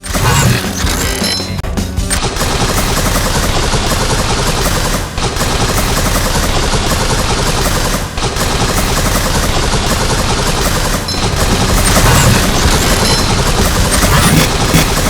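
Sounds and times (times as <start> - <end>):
dense rapid crackling: 0.0 - 15.0.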